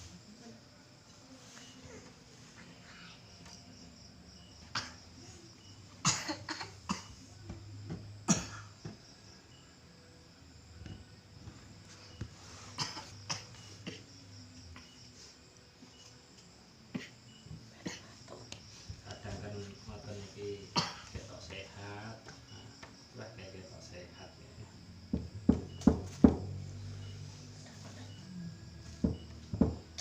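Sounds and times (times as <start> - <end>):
woman coughing: 4.7 - 5.0, 6.0 - 7.3, 8.3 - 8.8, 12.8 - 14.0, 17.8 - 18.2, 20.8 - 21.2.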